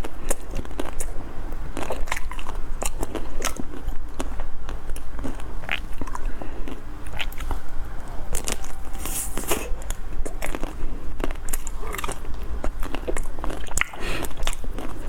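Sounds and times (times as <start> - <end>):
biting and chewing ice cream: 0.0 - 15.0.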